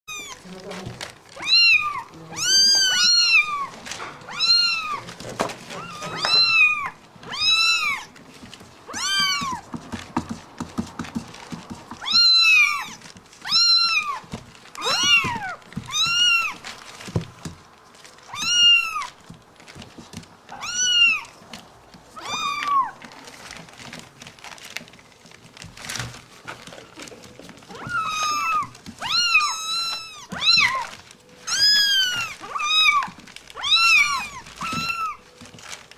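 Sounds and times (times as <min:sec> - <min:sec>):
cat meowing: 0:00.1 - 0:00.5, 0:01.4 - 0:05.1, 0:05.7 - 0:08.1, 0:08.9 - 0:09.6, 0:12.0 - 0:16.6, 0:18.3 - 0:19.2, 0:20.5 - 0:21.4, 0:22.2 - 0:23.1, 0:27.7 - 0:35.3.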